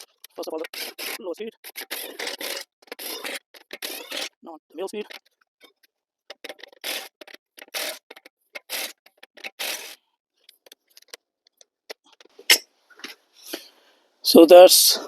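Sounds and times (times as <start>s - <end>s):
impact wrench bursts: 0.6s - 4.4s, 6.3s - 10.0s.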